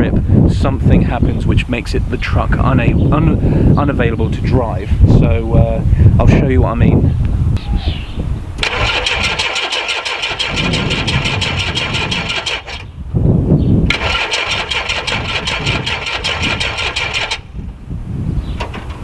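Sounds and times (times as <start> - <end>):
starter motor cranking engine: 8.6 - 13.0, 13.8 - 17.7.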